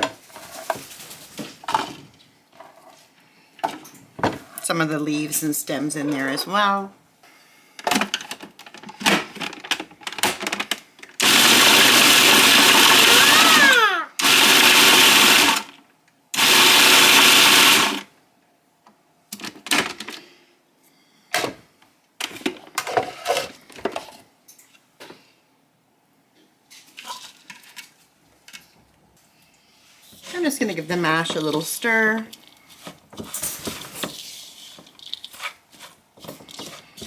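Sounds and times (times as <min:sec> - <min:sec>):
food processor chopping: 0:11.2 - 0:15.8, 0:16.4 - 0:18.1.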